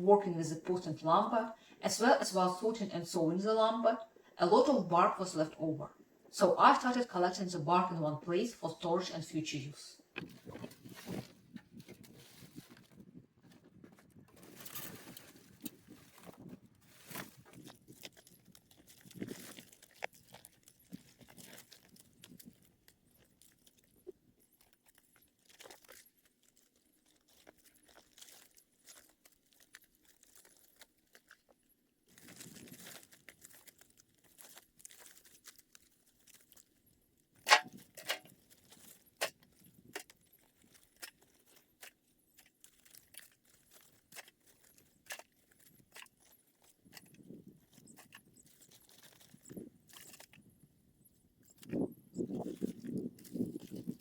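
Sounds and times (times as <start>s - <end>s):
bark crackling and rustling: 10.1s - 36.8s, 37.5s - 50.4s.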